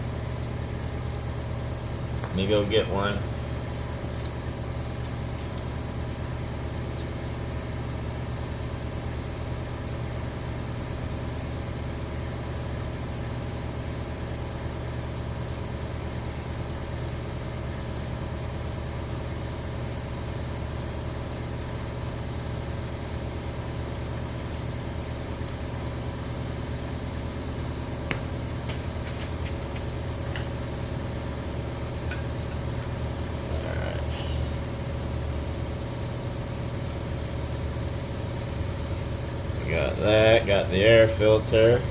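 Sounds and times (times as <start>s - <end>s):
low mechanical hum: 0.0s - 41.9s.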